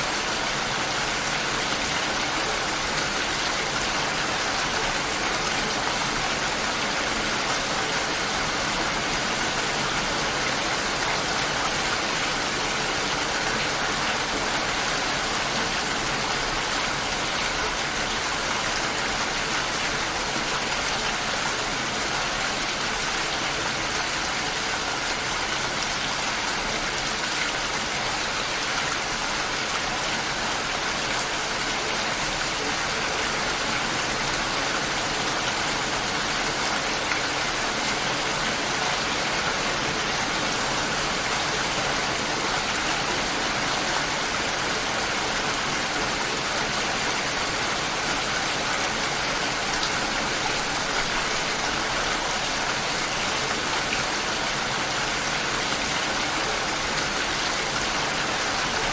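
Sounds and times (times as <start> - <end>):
light rain falling: 0.0 - 58.9.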